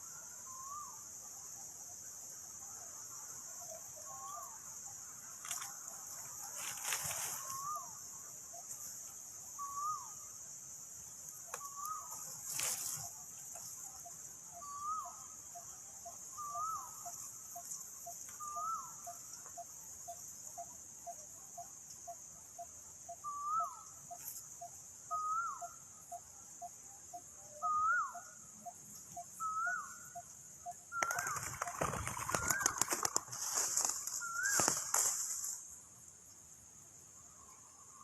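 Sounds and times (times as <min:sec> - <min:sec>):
insect hiss: 0:00.0 - 0:38.0
wings flapping and rustling: 0:06.4 - 0:07.6, 0:31.0 - 0:35.6.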